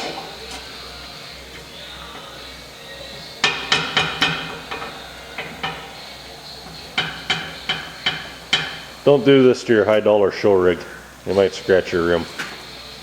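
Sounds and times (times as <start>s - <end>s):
metal tools striking steel rim: 3.4s - 5.9s, 6.9s - 8.9s.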